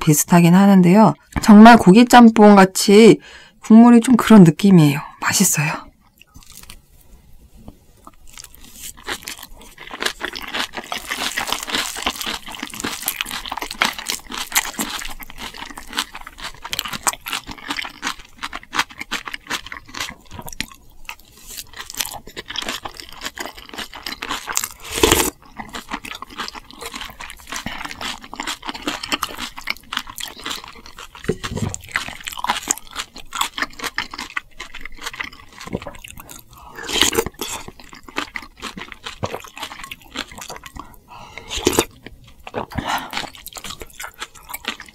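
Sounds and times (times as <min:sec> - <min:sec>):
crunchy chewing: 0:06.1 - 0:06.8, 0:08.0 - 0:44.9.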